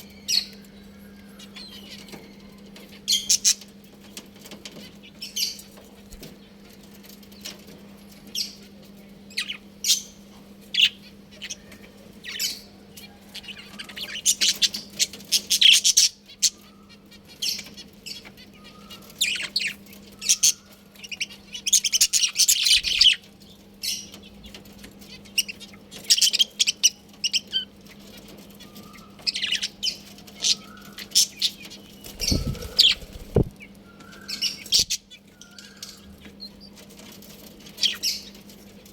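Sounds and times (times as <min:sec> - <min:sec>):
budgerigars chirping and chattering: 0:00.0 - 0:38.9
steady low hum: 0:31.8 - 0:33.8
low thumps: 0:32.2 - 0:33.6.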